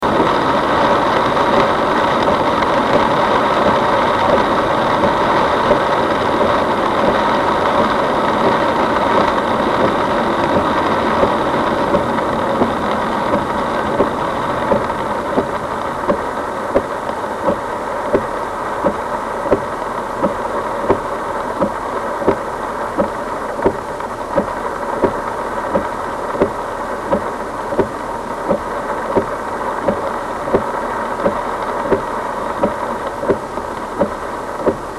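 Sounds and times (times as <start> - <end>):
car engine: 0.0 - 34.9
heavy rain on car: 0.0 - 34.9
road noise: 0.0 - 34.9.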